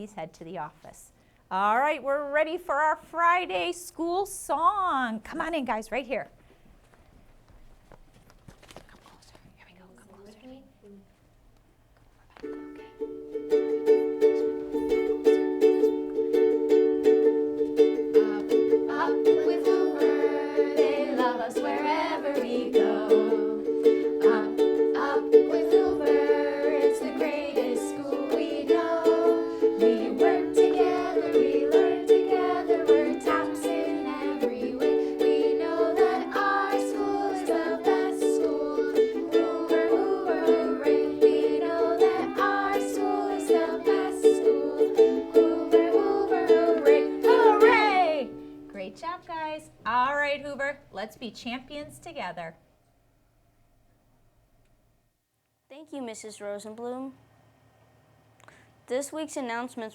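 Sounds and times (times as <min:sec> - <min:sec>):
strummed string instrument: 0:12.4 - 0:48.6
person singing: 0:14.2 - 0:16.4, 0:18.0 - 0:48.4.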